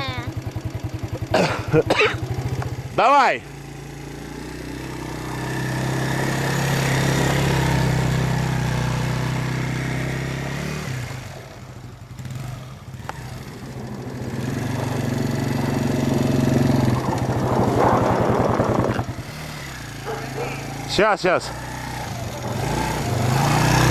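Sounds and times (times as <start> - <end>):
atv engine revving: 0.0 - 23.9.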